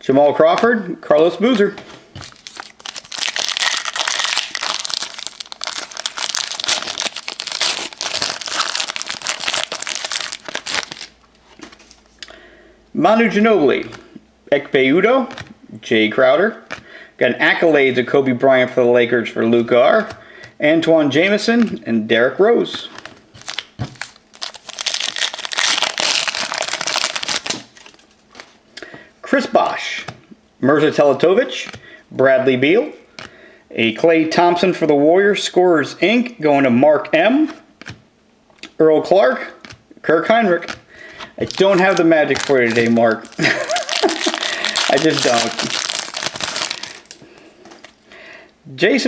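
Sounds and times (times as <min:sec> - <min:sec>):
foil wrapper crinkling and tearing: 0:02.2 - 0:11.9, 0:23.3 - 0:28.6, 0:40.5 - 0:48.0.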